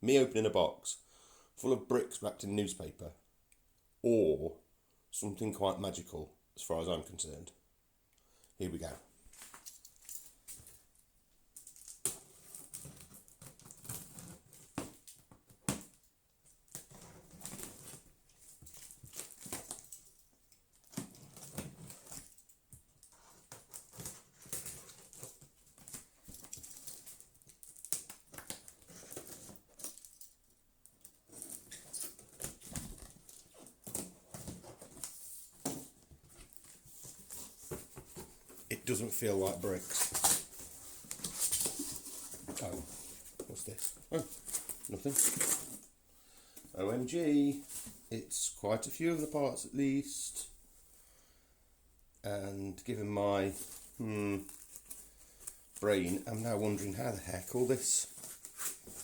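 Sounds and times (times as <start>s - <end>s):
scratching and rustling: 11.6s - 46.0s, 46.6s - 48.1s, 53.0s - 59.0s.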